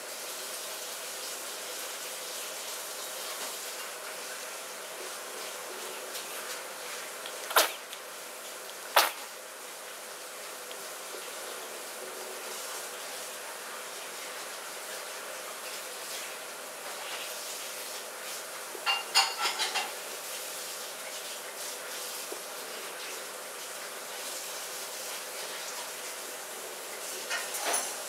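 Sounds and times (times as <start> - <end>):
person sneezing: 7.5 - 7.8, 8.9 - 9.3.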